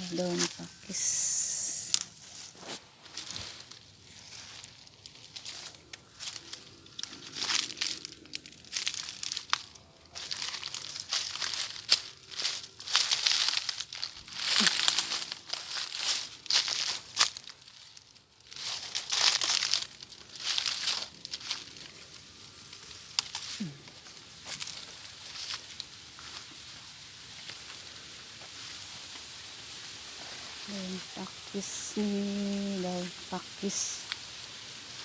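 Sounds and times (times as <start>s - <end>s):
leaves rustling and crinkling: 0.0s - 35.0s
small snaps and crackles: 4.5s - 26.5s.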